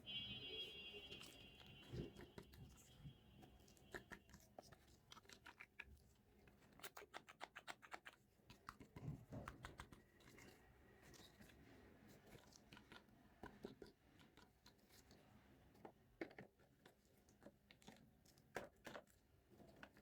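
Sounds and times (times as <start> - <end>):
faint high steady tone: 0.0 - 3.8.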